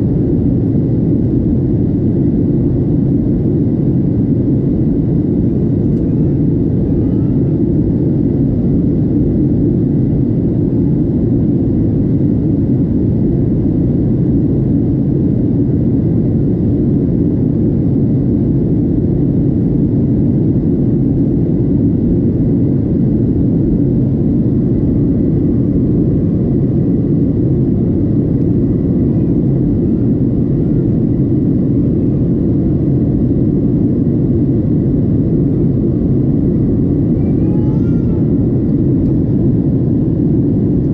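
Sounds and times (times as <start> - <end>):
airliner cabin engine and airflow noise: 0.0 - 40.9
faint steady high tone: 37.2 - 38.3.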